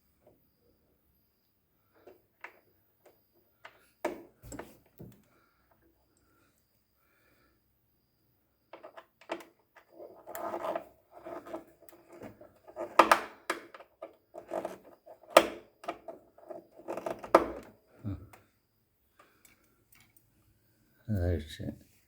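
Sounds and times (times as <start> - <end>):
scraping and rubbing of parts: 9.8 - 13.0.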